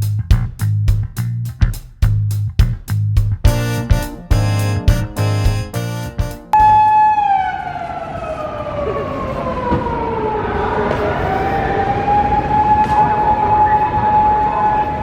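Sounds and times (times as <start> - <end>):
police siren wailing: 6.6 - 15.0.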